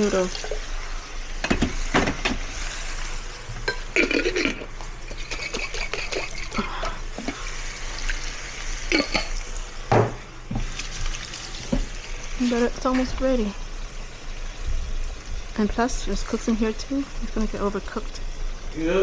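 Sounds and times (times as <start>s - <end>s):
utensil knocking against pot: 1.4s - 2.4s.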